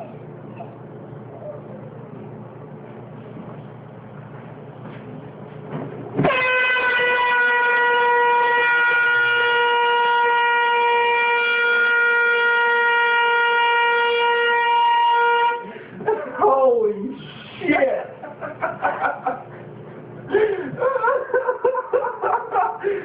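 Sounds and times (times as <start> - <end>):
air horn blasting: 6.2 - 15.9.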